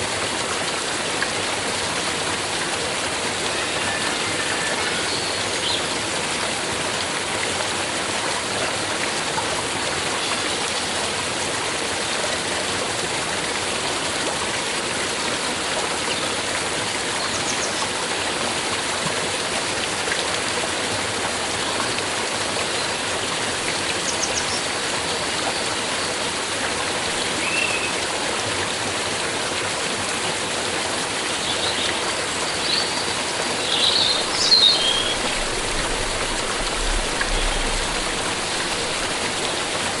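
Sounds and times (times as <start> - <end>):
stream water flowing: 0.0 - 40.0
birds chirping: 32.5 - 39.7.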